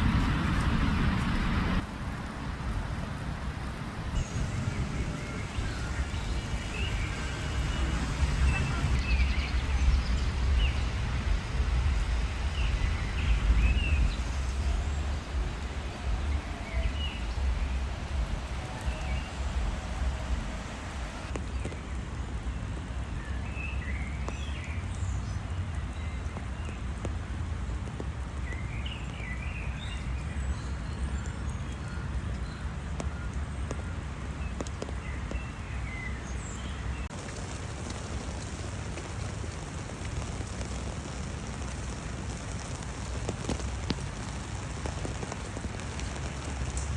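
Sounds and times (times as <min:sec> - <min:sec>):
low rumble: 0:00.0 - 0:21.4
rain hiss: 0:00.0 - 0:46.9
bird chirps: 0:04.2 - 0:11.0.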